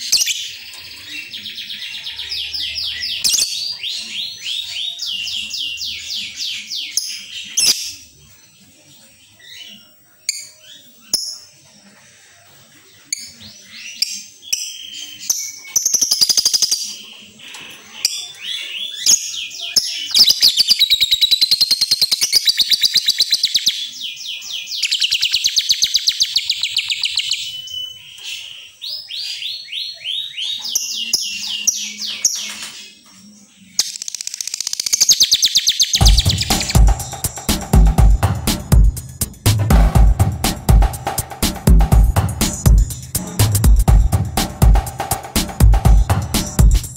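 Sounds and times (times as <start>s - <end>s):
lovebird chirping: 17.9s - 37.5s
rapid high-pitched chattering trills: 33.8s - 46.9s.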